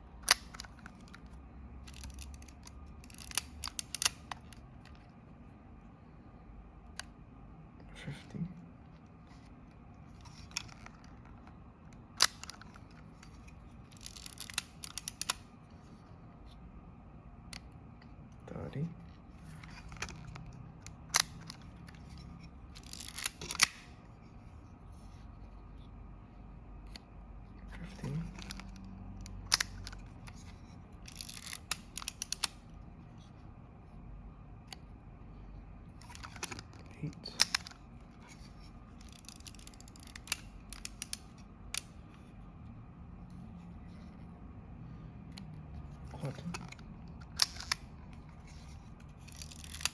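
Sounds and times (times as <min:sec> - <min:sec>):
camera mechanism clicks: 0:00.2 - 0:05.0, 0:10.1 - 0:15.5, 0:19.4 - 0:23.9, 0:27.8 - 0:32.7, 0:36.0 - 0:42.4, 0:45.3 - 0:49.9.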